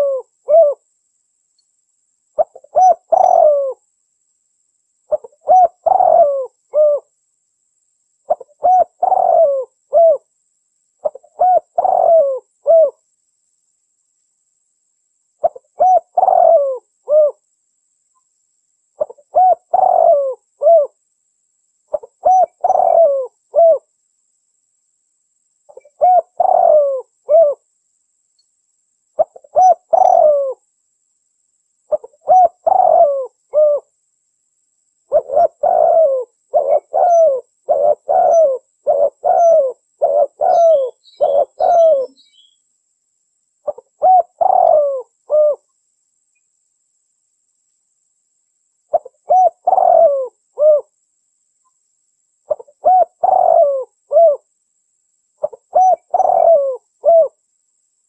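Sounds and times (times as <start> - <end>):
dove cooing: 0.0 - 0.8, 2.4 - 3.8, 5.1 - 7.1, 8.3 - 10.3, 11.0 - 13.0, 15.4 - 17.4, 19.0 - 21.0, 21.9 - 23.9, 25.7 - 27.6, 29.2 - 30.6, 31.9 - 33.9, 35.1 - 42.6, 43.6 - 45.6, 48.9 - 50.9, 52.5 - 54.5, 55.4 - 57.4
small bird high chirps: 35.1 - 42.7, 55.4 - 57.3.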